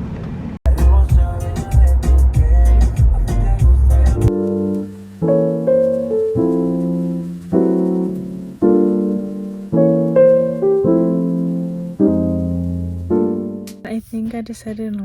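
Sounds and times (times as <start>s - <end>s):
soft piano chords: 0.7s - 13.9s.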